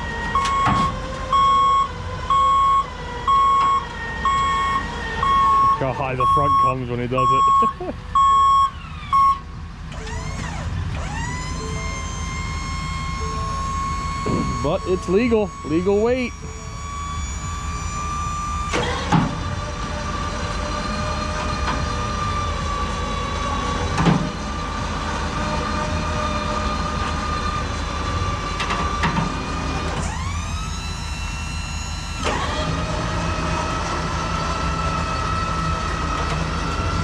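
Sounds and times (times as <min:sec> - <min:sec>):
diesel equipment rumbling: 0:00.0 - 0:37.0
high machine whine: 0:08.6 - 0:28.2.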